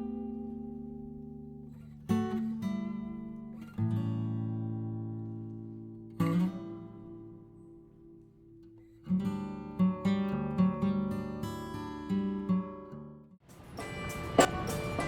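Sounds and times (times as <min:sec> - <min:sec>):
acoustic guitar strumming: 0:09.6 - 0:15.0.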